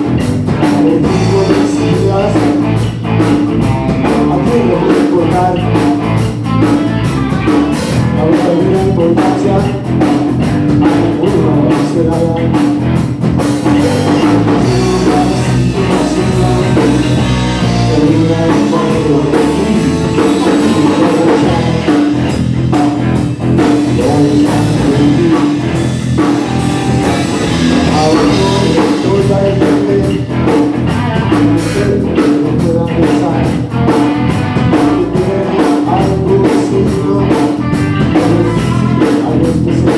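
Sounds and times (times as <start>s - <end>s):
rock and roll band playing: 0.0s - 39.9s.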